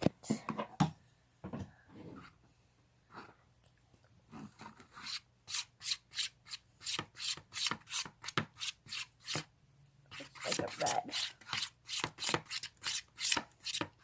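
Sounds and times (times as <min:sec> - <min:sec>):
utensil scraping round a bowl: 0:10.1 - 0:14.0.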